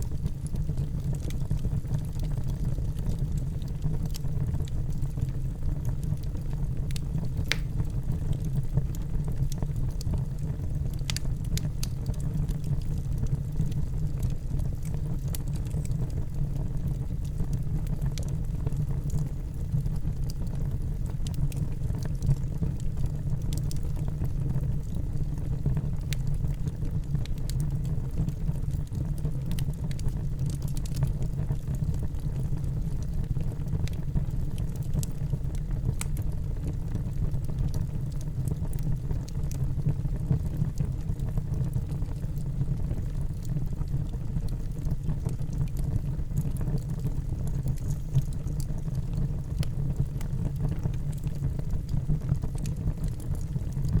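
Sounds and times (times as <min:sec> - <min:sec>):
wood fire crackling: 0:00.0 - 0:54.0.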